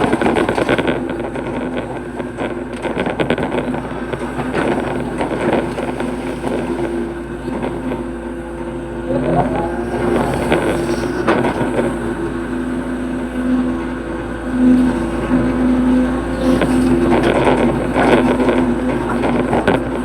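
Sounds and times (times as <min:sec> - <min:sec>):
excavator diesel engine running: 0:00.0 - 0:20.0
short rising whine: 0:09.0 - 0:11.6
knocks and scrapes: 0:09.0 - 0:12.3.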